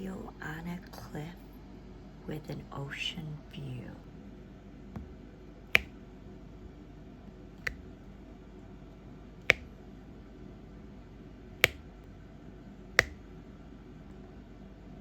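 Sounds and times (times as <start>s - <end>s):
pen tapping resin drills: 9.5s - 9.7s.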